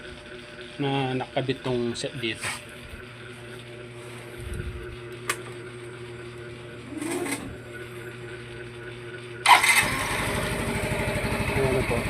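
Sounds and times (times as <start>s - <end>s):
steady low hum: 0.0s - 12.0s
brief whirr: 6.8s - 7.6s.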